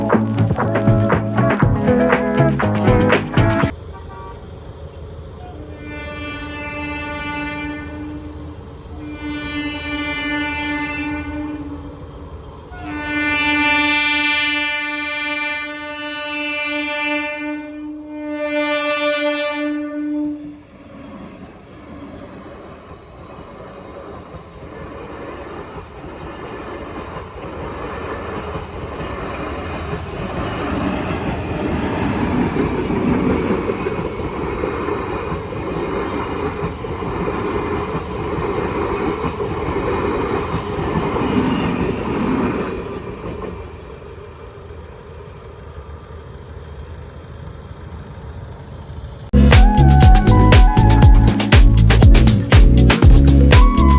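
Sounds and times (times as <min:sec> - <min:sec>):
train passing rumble: 0:00.0 - 0:53.9
train horn: 0:03.9 - 0:04.4, 0:05.4 - 0:12.0, 0:12.7 - 0:20.7
wheels clacking over rail joints: 0:20.8 - 0:49.3.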